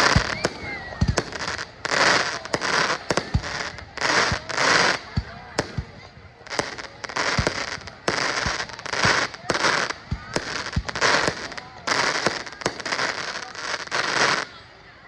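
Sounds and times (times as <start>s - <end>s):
fireworks bangs: 0.0s - 14.6s
fireworks hissing rush: 0.0s - 14.7s.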